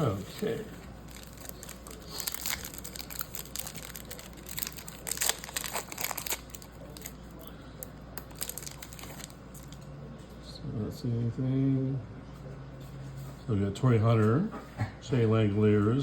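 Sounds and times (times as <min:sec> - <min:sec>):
wrapper crinkling and tearing: 0:00.0 - 0:09.8.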